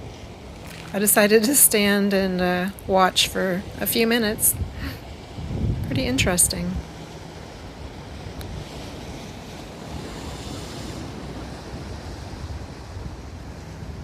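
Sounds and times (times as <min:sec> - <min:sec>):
ocean surf against rocks: 0:00.0 - 0:14.0
wind rumbling on microphone: 0:00.0 - 0:14.0.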